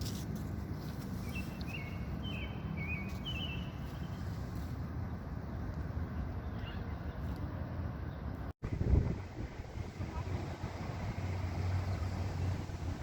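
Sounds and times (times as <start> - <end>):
low outdoor rumble: 0.0 - 13.0
bird chirping: 1.2 - 4.4.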